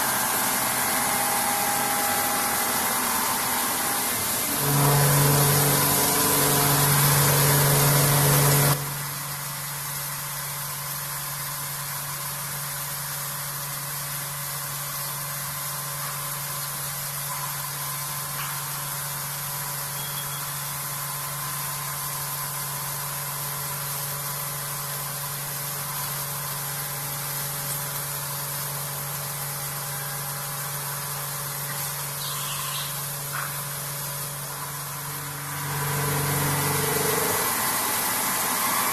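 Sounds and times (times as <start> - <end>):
loud metal cutting noise: 0.0 - 8.9, 25.7 - 38.9
machine low hum: 0.0 - 9.5, 25.3 - 38.9.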